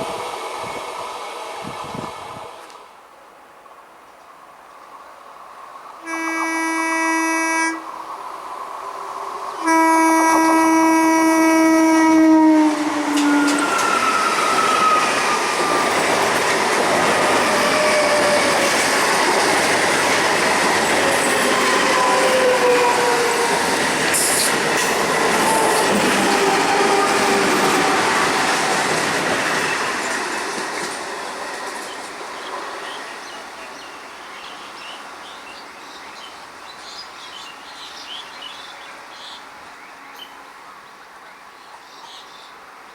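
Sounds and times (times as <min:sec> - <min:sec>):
train horn blasts: 0:06.0 - 0:07.9, 0:09.6 - 0:14.0
train wheels rattling on rails: 0:12.4 - 0:34.5.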